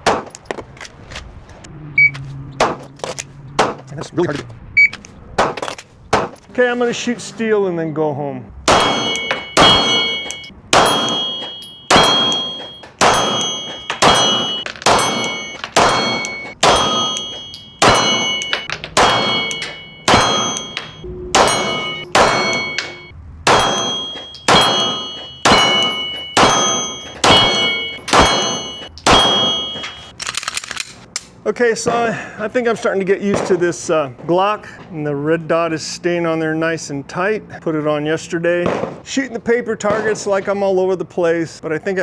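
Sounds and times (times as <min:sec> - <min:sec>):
pistol shots: 0:00.0 - 0:00.4, 0:02.6 - 0:03.9, 0:05.4 - 0:06.4, 0:08.7 - 0:31.2, 0:33.2 - 0:33.7, 0:38.6 - 0:39.1
steel target ringing: 0:08.7 - 0:30.1.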